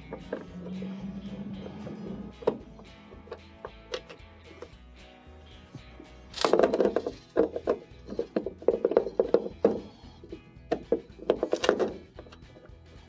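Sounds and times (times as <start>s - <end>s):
quiet background music: 0.0s - 13.0s
screwdriver rasping clicks: 6.3s - 6.8s.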